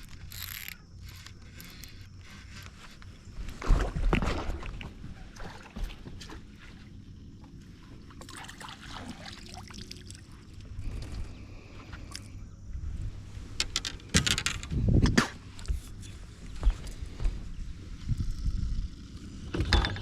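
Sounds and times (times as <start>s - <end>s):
small gear clicks: 0.0s - 3.1s
water noise: 2.3s - 11.1s.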